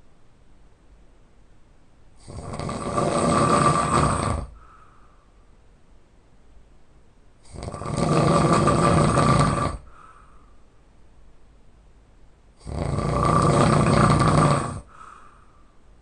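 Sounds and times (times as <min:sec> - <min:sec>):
person snoring loudly: 0:02.2 - 0:04.6, 0:07.4 - 0:10.0, 0:12.6 - 0:15.1
faint short breath: 0:04.5 - 0:05.6, 0:09.8 - 0:10.8, 0:14.9 - 0:15.9.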